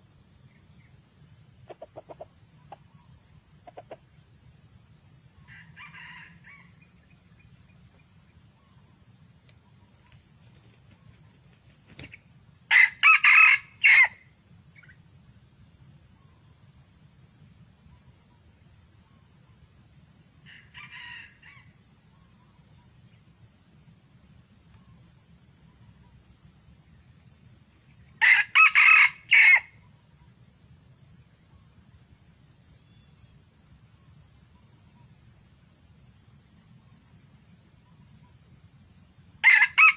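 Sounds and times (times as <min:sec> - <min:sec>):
high insect drone: 0:00.0 - 0:39.9
roosters crowing: 0:12.7 - 0:14.2, 0:20.5 - 0:21.7, 0:28.2 - 0:29.8, 0:39.4 - 0:39.9.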